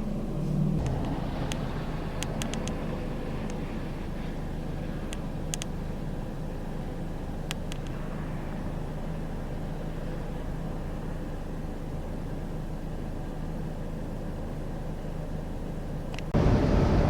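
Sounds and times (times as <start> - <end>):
road noise: 0.0 - 17.0
vehicle engine rumble: 0.0 - 17.0
sharp clicks: 0.8 - 1.6, 2.2 - 2.8, 5.1 - 5.7, 7.5 - 8.0.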